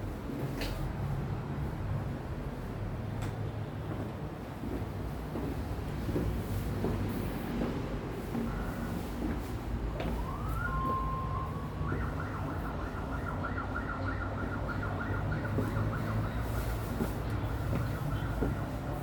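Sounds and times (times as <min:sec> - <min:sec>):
low traffic rumble: 0:00.0 - 0:19.0
emergency vehicle siren: 0:09.8 - 0:19.0.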